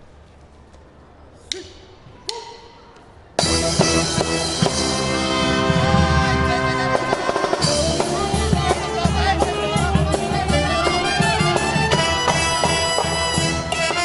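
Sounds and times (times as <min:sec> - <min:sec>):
bass drum: 0:03.4 - 0:14.0
brass marching band: 0:03.4 - 0:14.0
snare drum: 0:10.9 - 0:14.0.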